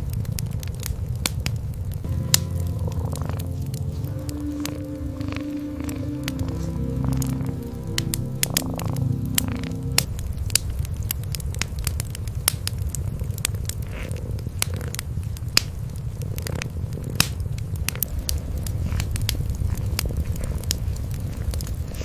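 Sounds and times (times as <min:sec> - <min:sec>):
wood fire crackling: 0:00.0 - 0:22.0
cat purring: 0:02.8 - 0:10.1.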